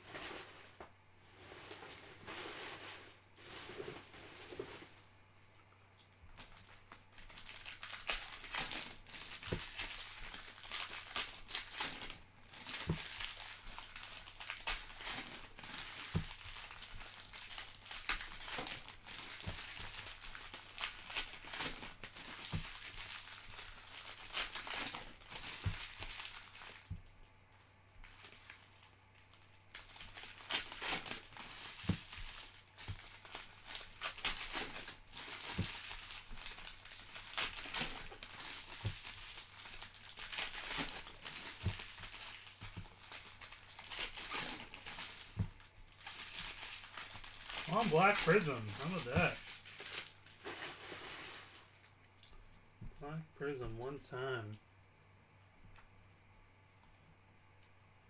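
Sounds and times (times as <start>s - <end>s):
plastic wrappers crinkling: 6.0s - 52.4s
card packs torn open: 6.4s - 26.9s, 29.7s - 50.7s.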